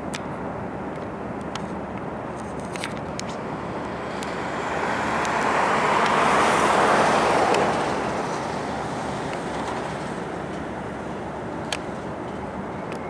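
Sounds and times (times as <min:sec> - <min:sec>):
road vehicle passing: 0:02.8 - 0:13.0.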